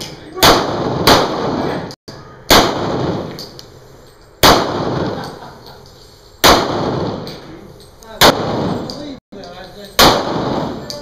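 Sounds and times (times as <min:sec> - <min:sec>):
pistol shots with echo: 0:00.4 - 0:01.9, 0:02.5 - 0:03.5, 0:04.4 - 0:05.3, 0:06.4 - 0:07.4, 0:08.2 - 0:09.0, 0:10.0 - 0:11.0.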